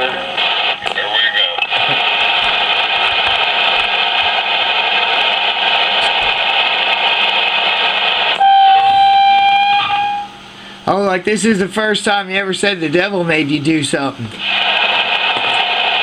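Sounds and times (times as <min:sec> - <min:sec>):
harsh radio noise: 0:00.0 - 0:09.9, 0:12.7 - 0:16.0
steady beep-like tone: 0:08.4 - 0:10.4.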